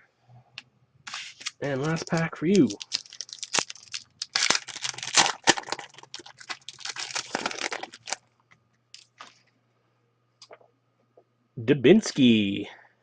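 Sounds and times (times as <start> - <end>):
foil wrapper tearing and crinkling: 1.1 - 8.2.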